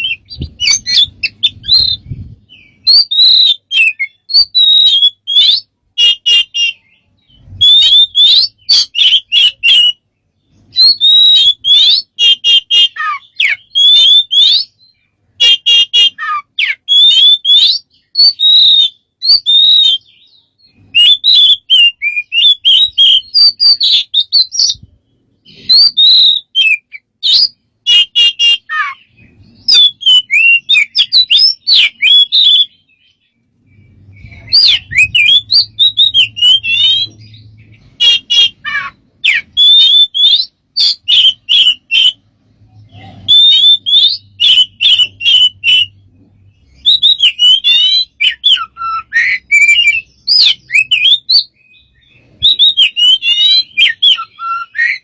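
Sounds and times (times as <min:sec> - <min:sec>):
bird calling with whistles and clicks: 0:00.0 - 0:55.0.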